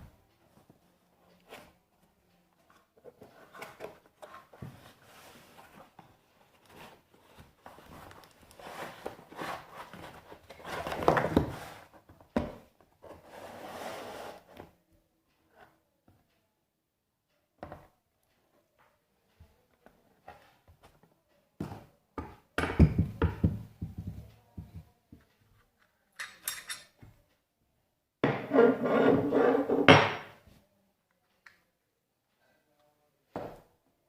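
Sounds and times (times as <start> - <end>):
metal spanners clinking: 26.2 - 27.0.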